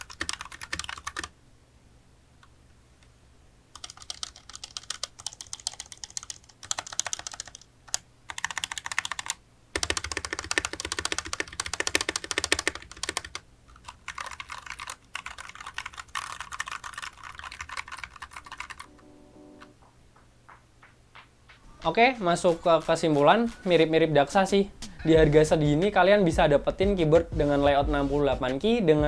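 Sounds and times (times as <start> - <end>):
fast typing on mechanical keyboard: 0.0 - 1.3, 3.7 - 18.9.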